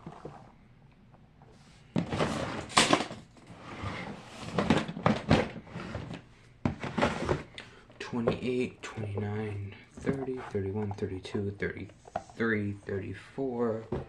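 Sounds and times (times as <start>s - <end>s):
plastic toys clattering and rustling: 1.5s - 10.4s.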